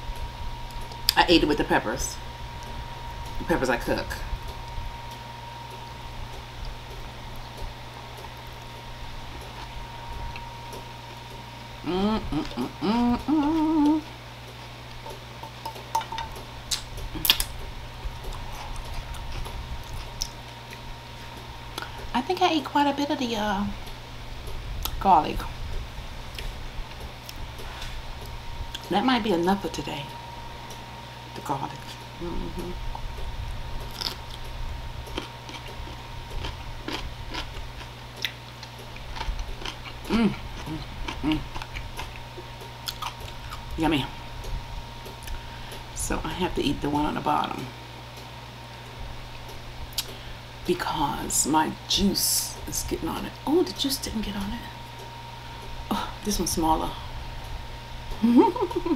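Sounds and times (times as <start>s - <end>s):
steady low hum: 0.0s - 58.9s
person chewing with wet clicks: 6.3s - 11.4s, 13.5s - 21.9s, 32.9s - 43.8s, 49.3s - 50.2s
person humming briefly: 11.8s - 14.1s, 32.2s - 32.8s, 40.1s - 41.5s
chewing: 18.2s - 20.8s, 35.1s - 43.8s.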